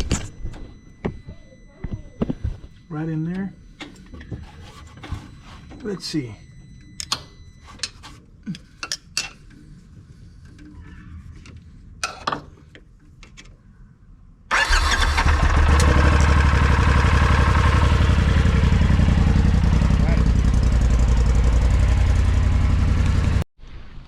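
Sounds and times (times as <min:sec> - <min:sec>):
engine starting and idling: 0:14.5 - 0:22.9.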